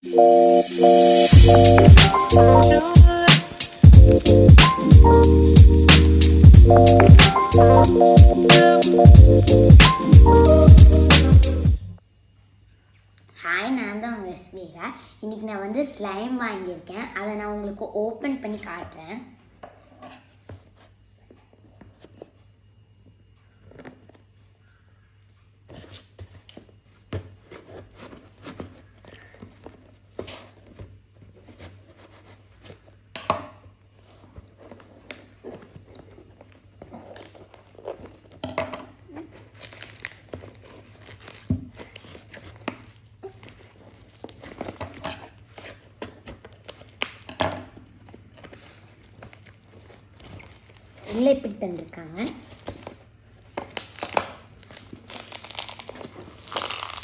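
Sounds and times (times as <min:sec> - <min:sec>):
packaging crinkling and tearing: 0:33.9 - 0:57.0.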